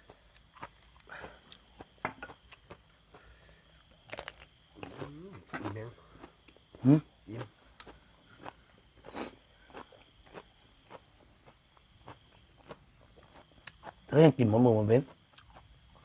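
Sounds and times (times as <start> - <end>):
crisp bites and chewing: 3.8 - 5.8
short hissing: 9.1 - 9.4.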